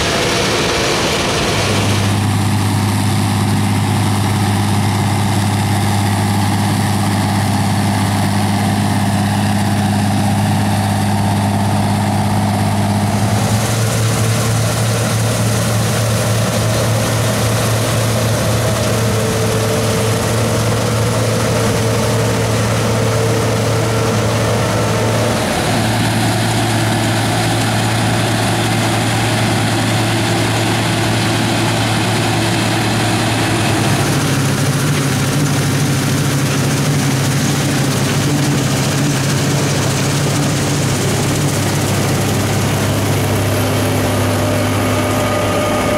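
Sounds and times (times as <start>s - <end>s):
diesel engines running: 0.0s - 45.9s.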